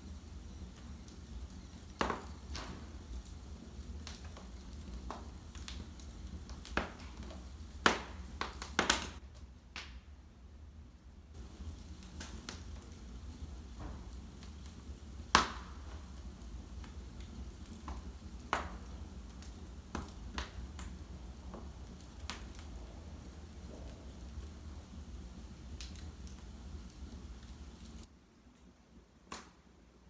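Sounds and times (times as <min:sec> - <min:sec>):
fire crackling and popping: 0:00.0 - 0:09.2, 0:11.4 - 0:28.1
steady low hum: 0:11.4 - 0:28.1.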